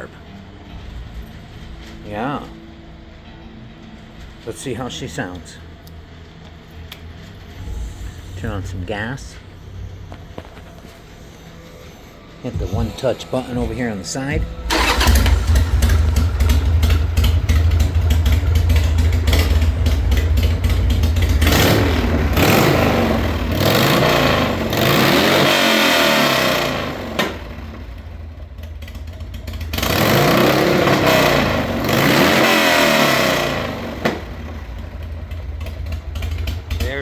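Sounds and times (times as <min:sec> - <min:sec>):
motorcycle engine revving and idling: 0:14.4 - 0:37.0.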